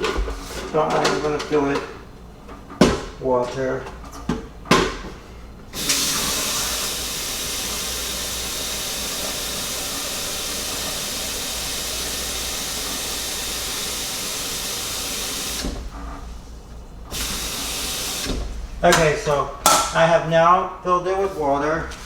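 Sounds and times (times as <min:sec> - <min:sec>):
tap water running into tank: 0:05.8 - 0:16.0, 0:17.1 - 0:19.9.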